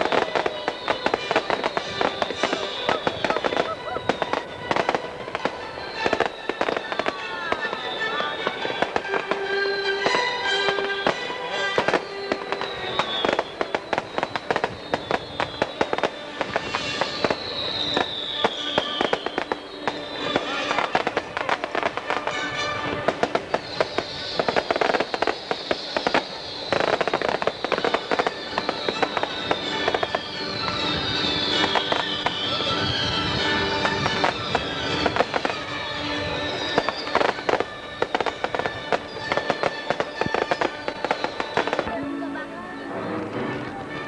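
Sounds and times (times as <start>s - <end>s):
music soundtrack: 0.0s - 14.0s, 15.7s - 44.0s
fireworks bangs and crackling: 0.0s - 44.0s
fireworks falling whistles: 0.0s - 44.0s.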